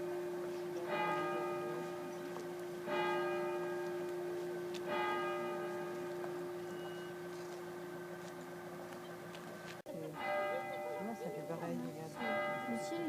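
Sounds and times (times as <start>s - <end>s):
church bell tolling: 0.0s - 9.3s, 10.1s - 13.0s.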